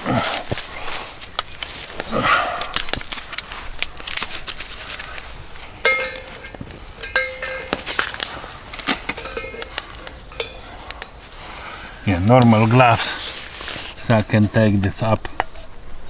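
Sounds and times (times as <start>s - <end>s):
ringing metal clinks: 5.9s - 11.1s.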